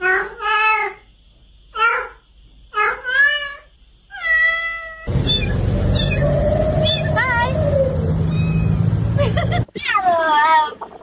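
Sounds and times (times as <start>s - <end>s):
background hiss: 0.0s - 11.0s
cat meowing: 2.8s - 8.9s.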